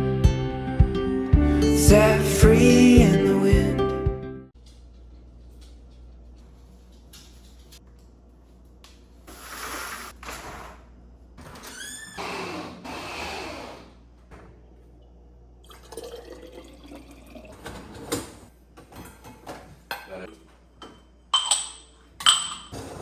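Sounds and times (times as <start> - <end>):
water pouring into container: 15.6 - 17.7
dishware clinking: 18.9 - 22.8.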